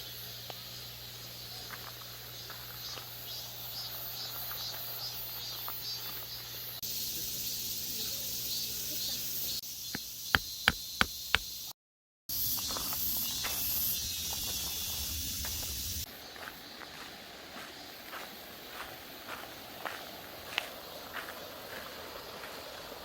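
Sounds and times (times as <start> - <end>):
insects chirping: 0.0 - 23.0.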